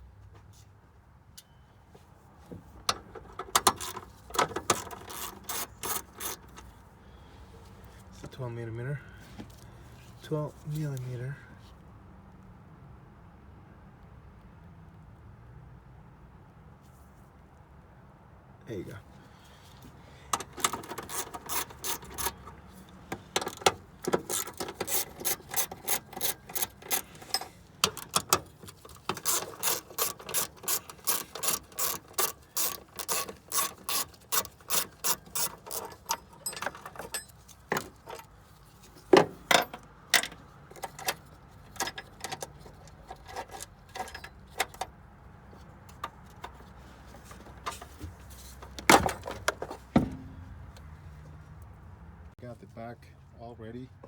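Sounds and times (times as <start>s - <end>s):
ratchet wrench clicking: 3.6s - 6.7s, 20.3s - 22.6s, 23.2s - 38.3s.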